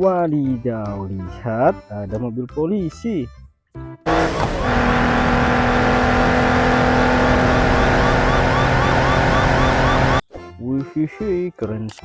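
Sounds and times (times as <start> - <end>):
police siren yelping: 7.3 - 10.2.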